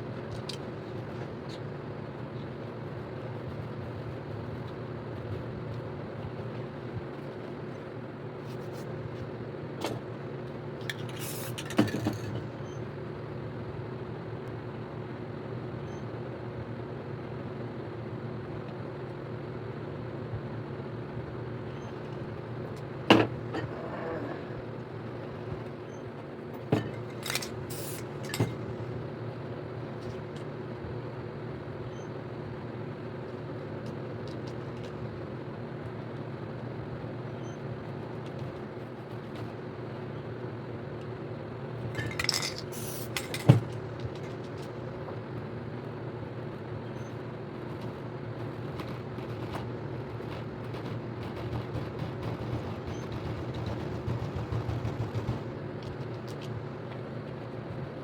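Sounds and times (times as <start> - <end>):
steady mechanical hum: 0.0 - 58.0
spray paint hissing: 27.7 - 28.1.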